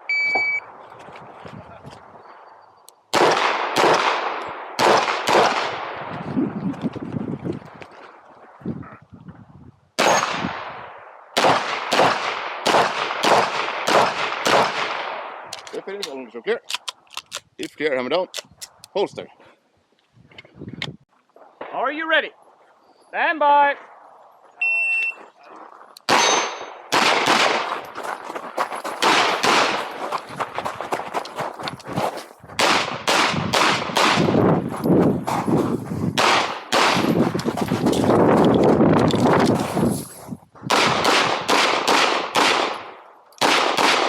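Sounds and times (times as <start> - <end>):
handgun shots with echo: 3.1 - 5.8, 10.0 - 10.5, 11.4 - 16.8, 26.1 - 27.8, 29.0 - 29.9, 32.6 - 34.4, 36.2 - 37.1, 40.7 - 44.0.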